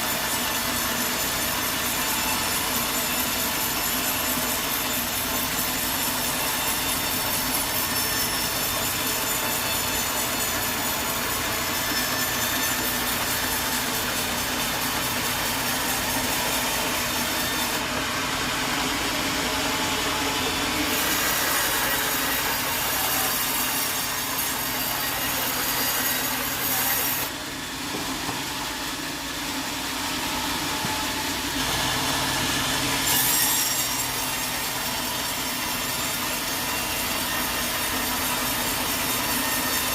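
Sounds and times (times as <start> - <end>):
saw cutting through wood: 0.0 - 39.9.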